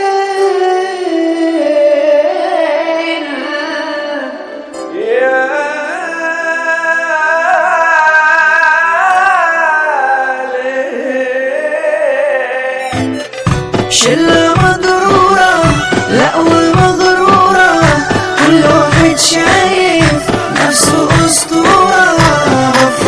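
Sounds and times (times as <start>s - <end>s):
sliding lead melody: 12.8s - 23.0s
sustained musical backing: 12.8s - 23.0s.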